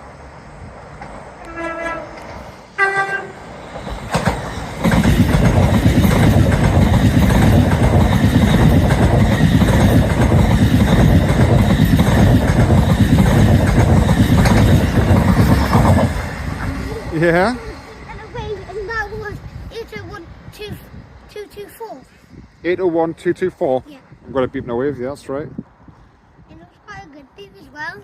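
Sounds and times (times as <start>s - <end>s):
train wheels rushing on rail: 0.0s - 24.2s
train horn notes: 1.4s - 3.4s.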